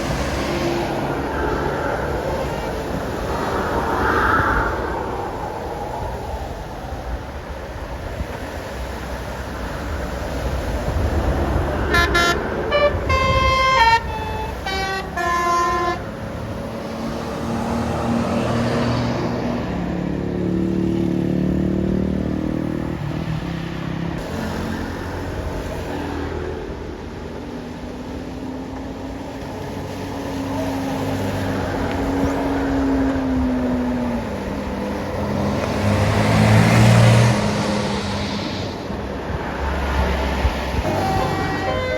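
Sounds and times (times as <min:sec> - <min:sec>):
heavy engine passing by: 0:00.0 - 0:07.5, 0:29.1 - 0:41.9
traffic noise: 0:00.0 - 0:41.9
multi-tone bus horn tune: 0:11.8 - 0:16.4, 0:40.8 - 0:41.9.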